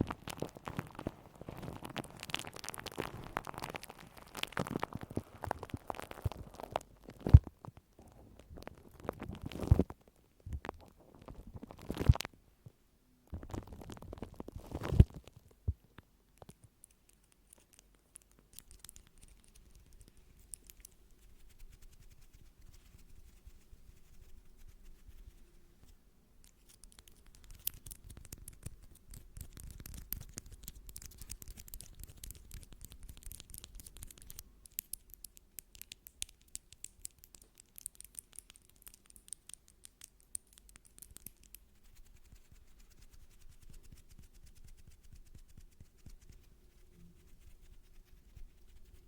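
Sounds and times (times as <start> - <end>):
quick taps and scratches: 13.4 - 49.0.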